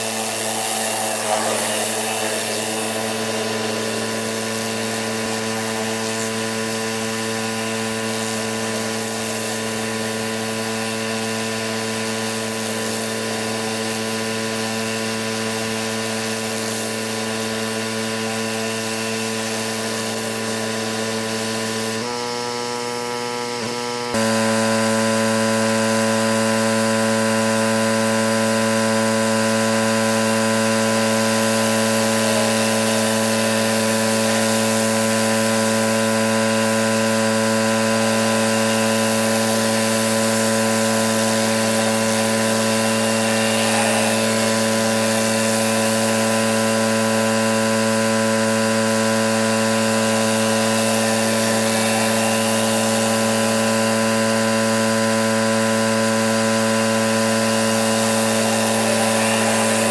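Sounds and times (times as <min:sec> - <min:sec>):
hiss of water spray: 0:00.0 - 0:05.2, 0:38.2 - 0:47.0, 0:57.4 - 0:59.9
pressure washer engine running: 0:00.0 - 0:59.9.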